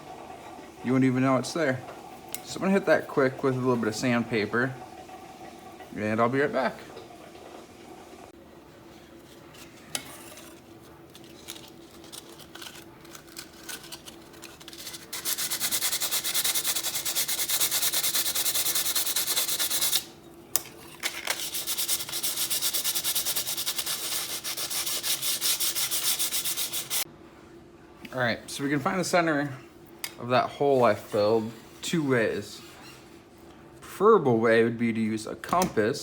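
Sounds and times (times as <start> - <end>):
sandpaper rubbing: 11.9 - 20.1, 21.2 - 27.0.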